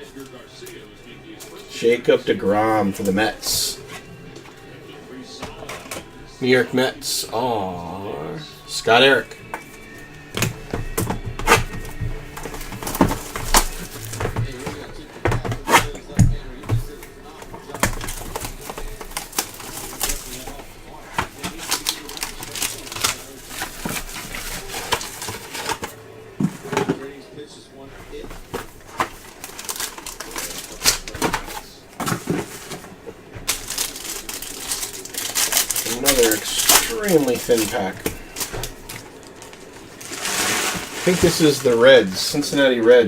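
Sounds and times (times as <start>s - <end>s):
foil wrappers crackling and snapping: 9.7s - 26.0s, 28.1s - 42.6s.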